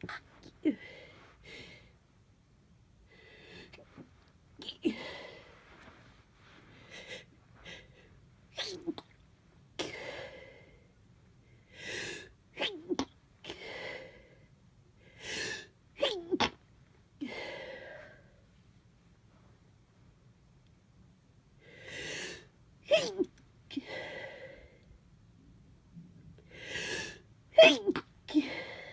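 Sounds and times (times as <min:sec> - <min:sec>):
person sneezing: 0:22.9 - 0:23.3.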